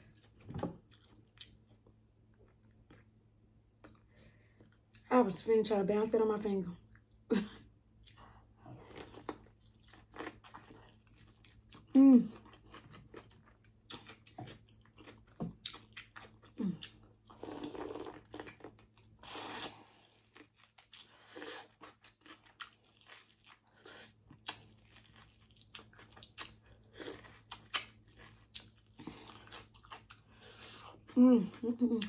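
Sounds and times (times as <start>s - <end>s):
faint low hum: 0.0s - 32.0s
crunching bites and chewing: 8.8s - 31.2s.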